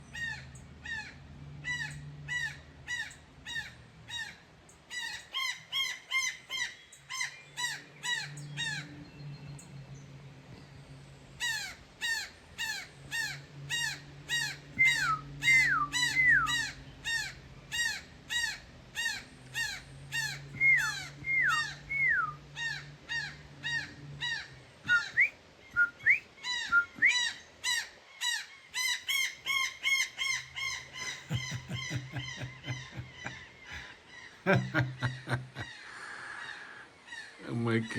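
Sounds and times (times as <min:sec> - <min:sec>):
bird calling in sharp notes: 0:11.5 - 0:33.9
falling whistled bird notes: 0:20.6 - 0:22.4, 0:24.9 - 0:27.2.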